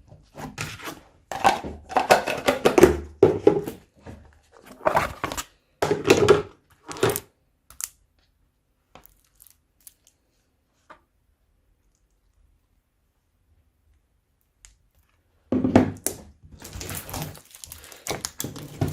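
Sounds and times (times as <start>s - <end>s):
crunchy slime squished by hand: 16.6s - 18.9s.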